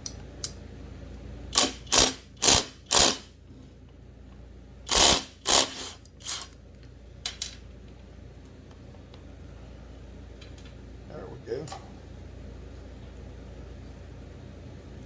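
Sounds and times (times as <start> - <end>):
wrench ratcheting: 1.6 - 3.2, 4.9 - 6.5.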